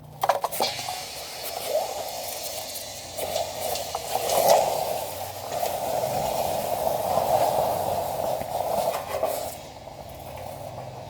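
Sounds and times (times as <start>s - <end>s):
steam hissing in water: 0.4s - 11.0s.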